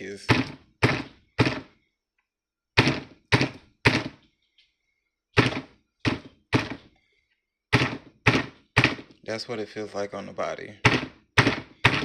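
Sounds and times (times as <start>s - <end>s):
hard knocks: 0.2s - 1.8s, 2.8s - 4.2s, 5.4s - 6.9s, 7.7s - 9.1s, 10.8s - 12.0s.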